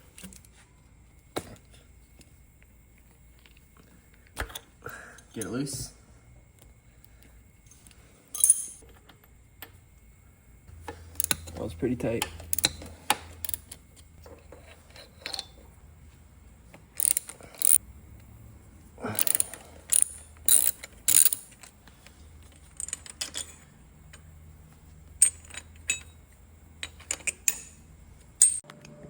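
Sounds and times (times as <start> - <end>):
metal tools clinking: 5.3 - 5.9, 7.7 - 9.3, 11.1 - 15.7, 16.9 - 17.8, 19.1 - 21.8, 22.4 - 24.2, 25.1 - 28.6
socket ratchet clicking: 11.1 - 11.5, 12.2 - 14.1, 16.9 - 17.8, 19.2 - 21.8.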